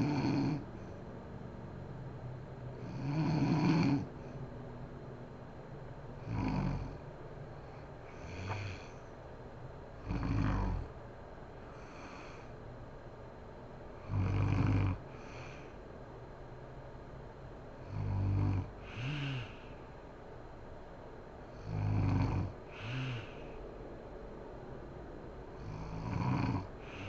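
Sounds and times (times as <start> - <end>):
woman snoring: 0.0 - 0.7, 2.8 - 4.1, 6.2 - 7.0, 8.1 - 9.0, 10.0 - 10.9, 14.0 - 15.7, 17.8 - 19.8, 21.6 - 23.6, 25.6 - 27.0
steady low hiss: 4.0 - 27.0.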